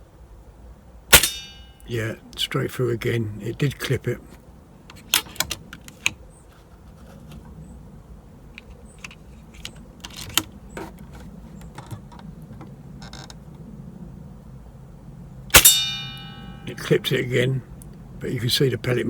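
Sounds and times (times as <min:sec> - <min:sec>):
low steady hum: 0:00.0 - 0:19.0
air rifle shot: 0:01.1 - 0:01.6, 0:15.5 - 0:16.6
metal target ringing: 0:01.1 - 0:01.9, 0:15.5 - 0:16.8
air rifle clicks and creaks: 0:04.9 - 0:07.6, 0:08.6 - 0:13.4.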